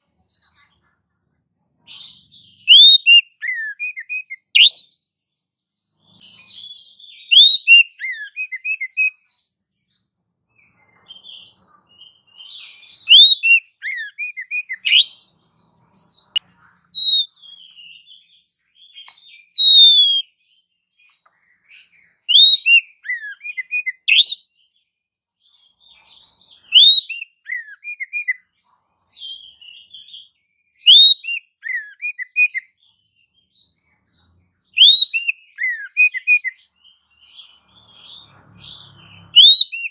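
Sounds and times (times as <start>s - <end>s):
bird whistles and chirps: 1.7s - 5.5s, 6.1s - 28.5s, 29.1s - 39.9s
bird chattering: 13.0s - 15.3s, 16.0s - 17.5s, 19.6s - 20.2s.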